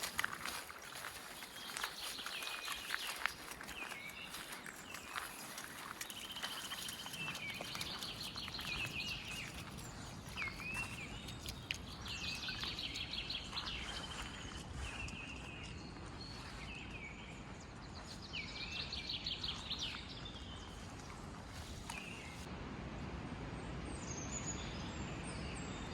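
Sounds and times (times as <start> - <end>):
songbird singing trilled phrases: 1.4 - 17.2.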